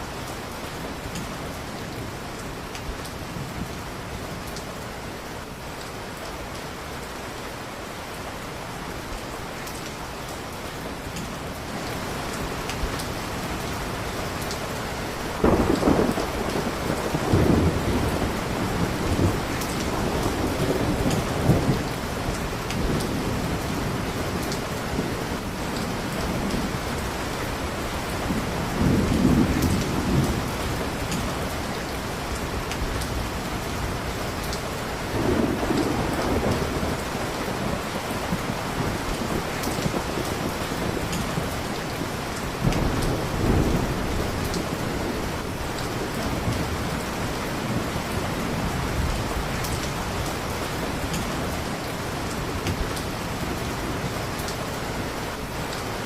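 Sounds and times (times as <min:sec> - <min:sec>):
heavy rain: 0:00.0 - 0:56.0
thunder rolling: 0:35.1 - 0:46.9.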